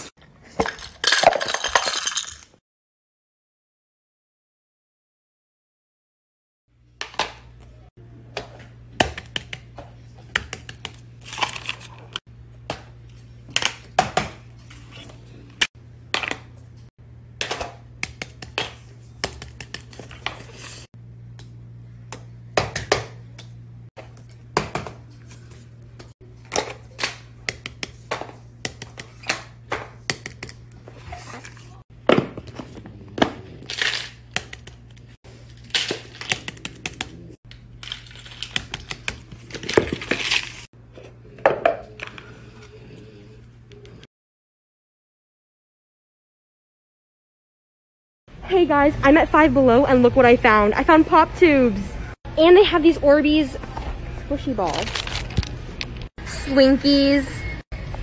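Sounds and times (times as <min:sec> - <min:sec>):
low electrical hum: 0:07.5 - 0:42.2.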